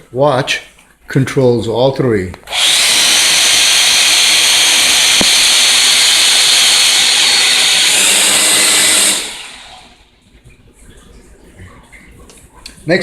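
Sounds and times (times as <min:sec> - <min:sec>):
toy drone propellers whirring: 0:02.5 - 0:10.0.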